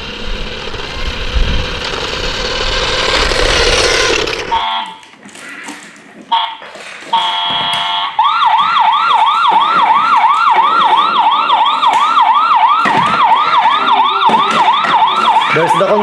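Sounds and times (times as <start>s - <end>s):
steady electronic tone: 0.0s - 4.7s
toy electronic siren: 0.0s - 5.1s, 6.3s - 16.0s.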